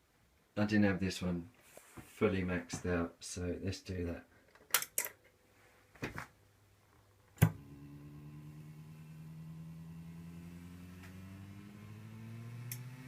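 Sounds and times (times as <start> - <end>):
motor hum rising in pitch: 7.4 - 13.0
faint click: 12.7 - 12.9
sharp switch snap: 12.7 - 12.9.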